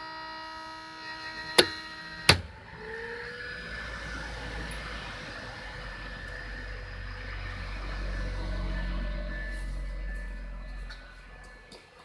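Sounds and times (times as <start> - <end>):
cooling fan whining: 1.4 - 4.2
sharp tap on headlight: 1.6 - 2.6.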